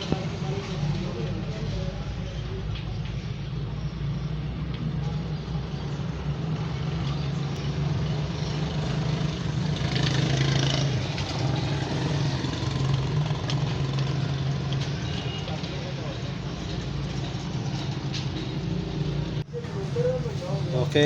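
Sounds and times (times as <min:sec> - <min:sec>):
engine humming: 0:00.0 - 0:21.0
light clatter: 0:13.4 - 0:18.8.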